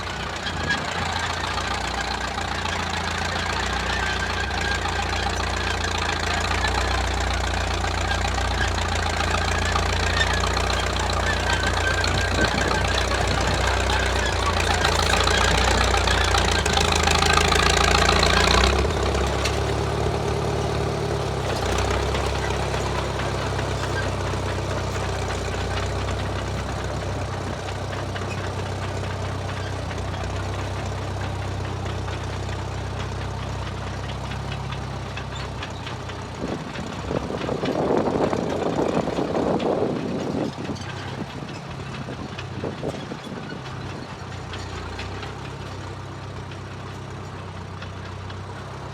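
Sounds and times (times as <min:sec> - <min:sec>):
loud rough noise: 0:00.0 - 0:31.1
bulldozer engine running: 0:00.0 - 0:48.9.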